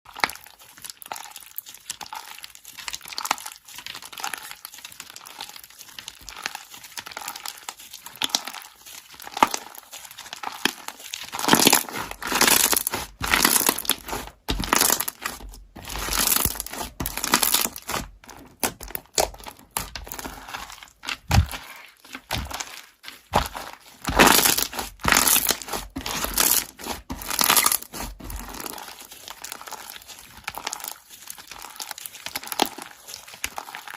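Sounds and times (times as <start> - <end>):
crinkly crackles and pops: 0.1 - 33.9
slime squished by hand: 0.1 - 33.9.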